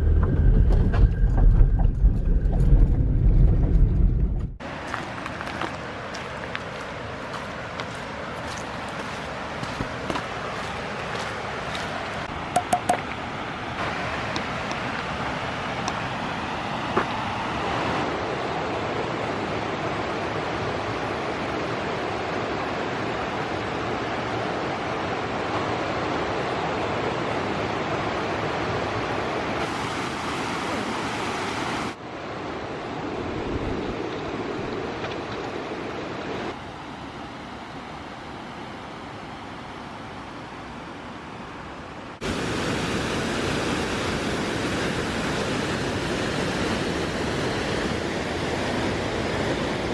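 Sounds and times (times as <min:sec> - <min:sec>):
waterfall rushing: 0:04.6 - 0:32.0, 0:42.2 - 0:49.9.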